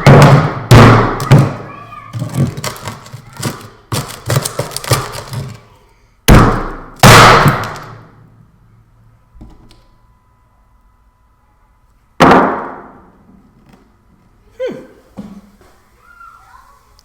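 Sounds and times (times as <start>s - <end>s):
hammer smashing a phone: 6.3s - 8.0s.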